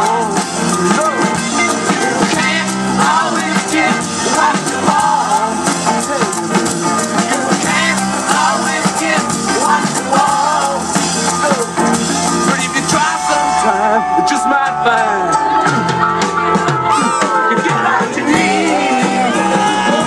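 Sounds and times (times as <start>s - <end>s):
rock band playing: 0.0s - 20.0s.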